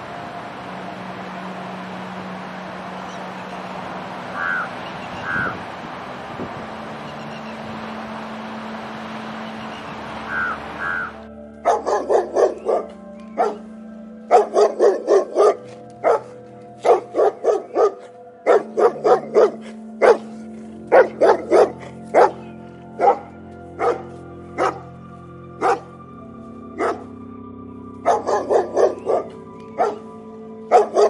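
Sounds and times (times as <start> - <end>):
background music with held tones: 0.0 - 31.0
dog barking: 11.6 - 13.6, 14.3 - 24.9, 25.6 - 25.9, 26.8 - 27.0, 28.1 - 30.0, 30.7 - 31.0.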